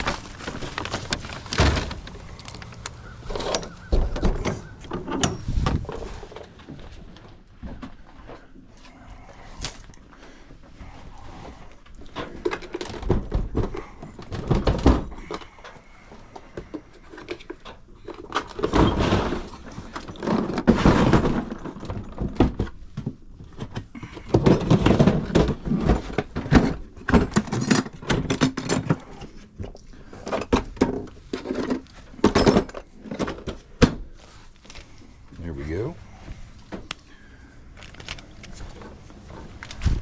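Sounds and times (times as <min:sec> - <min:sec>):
hand tools clicking on metal parts: 0:00.8 - 0:03.7.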